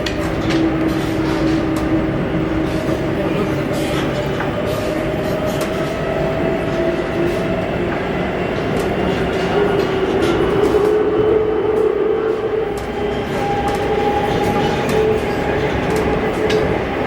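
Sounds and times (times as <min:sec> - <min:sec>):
tram wheels on rail: 0:00.0 - 0:17.0.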